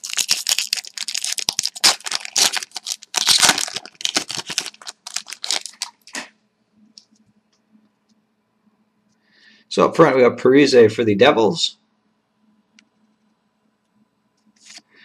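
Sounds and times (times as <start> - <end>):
wrapper tearing and crinkling: 0.0 - 6.3.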